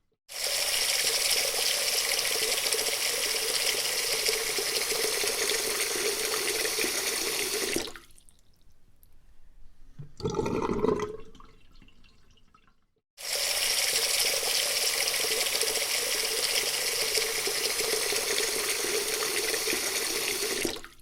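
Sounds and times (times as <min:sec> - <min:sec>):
water running: 0:00.3 - 0:08.5, 0:13.2 - 0:21.0.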